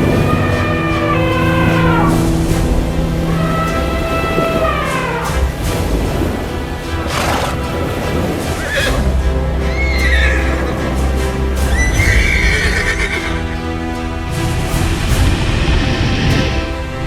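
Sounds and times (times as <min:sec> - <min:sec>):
background music with deep bass: 0:00.0 - 0:17.0
horse whinnying: 0:09.7 - 0:10.8, 0:11.8 - 0:13.5.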